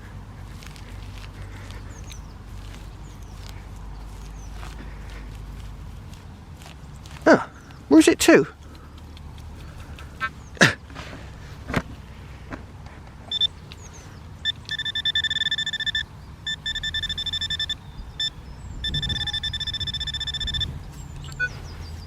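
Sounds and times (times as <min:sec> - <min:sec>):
metal detector pinpointer beeping: 0:13.3 - 0:13.6, 0:14.4 - 0:21.6.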